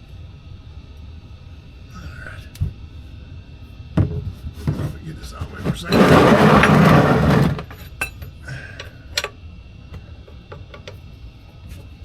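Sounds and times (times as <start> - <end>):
scraping rustling rush: 4.7 - 7.7.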